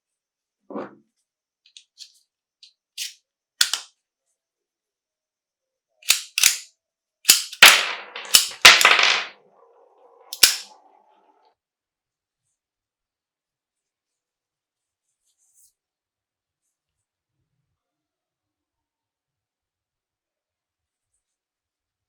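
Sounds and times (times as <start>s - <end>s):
pistol mechanism clacking: 3.0s - 3.9s, 6.1s - 6.7s, 7.3s - 9.3s, 10.3s - 10.7s.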